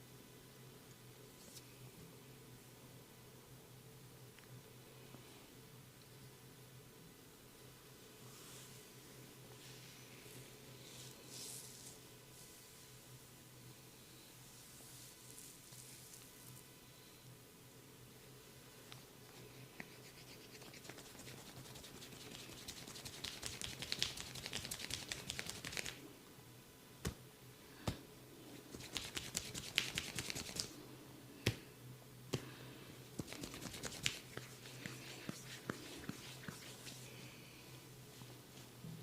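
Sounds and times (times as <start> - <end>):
fingers rubbing hair and skin: 19.7 - 26.0, 28.6 - 30.7, 33.2 - 37.1.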